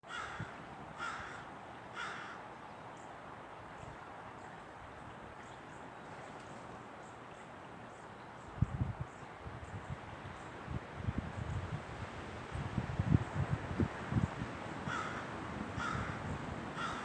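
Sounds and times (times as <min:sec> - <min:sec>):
steady outdoor hiss: 0:00.0 - 0:17.0
bird harsh calls: 0:16.8 - 0:17.0.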